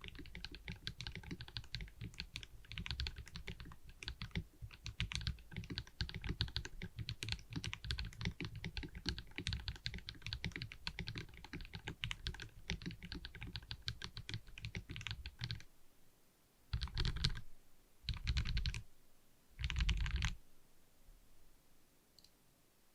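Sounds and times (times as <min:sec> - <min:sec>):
mechanical keyboard typing: 0:00.0 - 0:15.6, 0:16.7 - 0:17.4, 0:18.1 - 0:18.8, 0:19.6 - 0:20.4.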